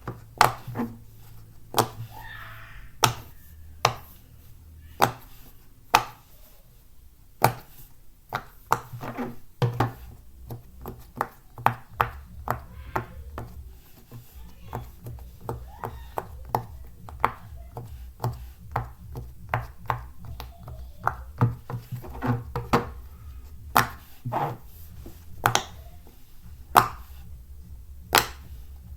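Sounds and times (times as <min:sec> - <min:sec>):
fidget toy bubbles popping: 0:14.7 - 0:28.9.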